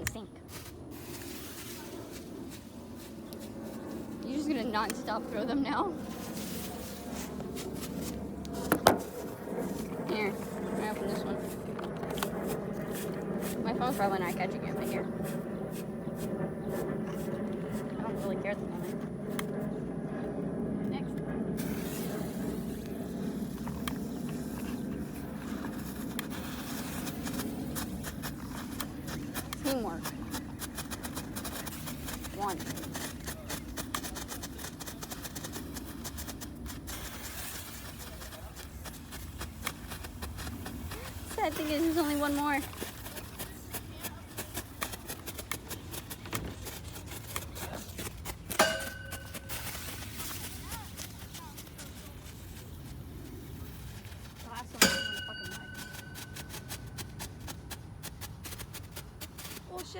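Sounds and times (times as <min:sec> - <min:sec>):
steady low rumble: 0:00.0 - 0:57.0
firework crackling: 0:21.6 - 0:28.9
thin steady tone: 0:48.6 - 0:49.9, 0:54.8 - 0:56.6.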